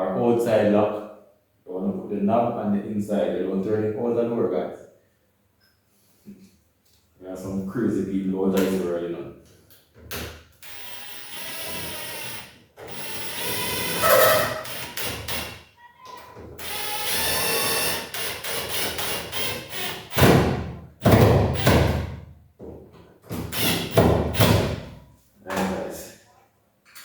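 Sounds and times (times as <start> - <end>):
power drill running: 10.6 - 15.4, 16.6 - 20.2.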